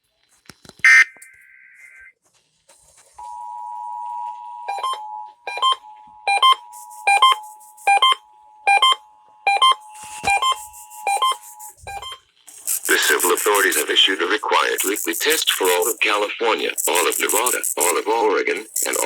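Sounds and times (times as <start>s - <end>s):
repeating beep: 0.9s - 2.1s, 4.6s - 18.2s
two-tone alert signal: 3.2s - 14.2s.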